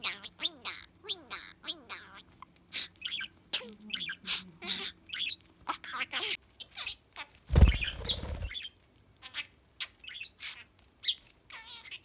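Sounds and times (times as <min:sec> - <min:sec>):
loud rustling: 0:07.5 - 0:08.5
budgerigar chirping: 0:07.6 - 0:08.6.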